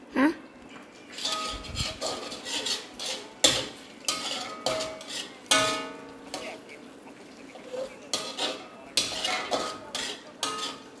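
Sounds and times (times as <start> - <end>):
metal utensil scraping a pan: 1.0 - 11.0.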